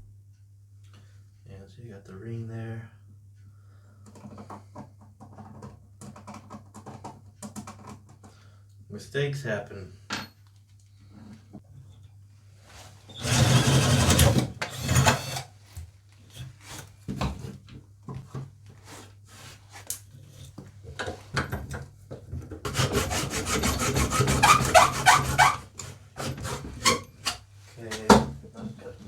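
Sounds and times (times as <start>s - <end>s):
tool scraping wood: 13.2s - 15.5s, 22.6s - 28.1s.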